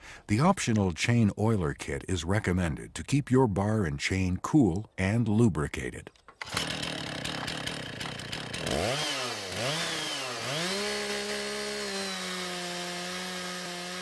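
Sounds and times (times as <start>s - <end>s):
chainsaw engine revving: 6.4s - 14.0s.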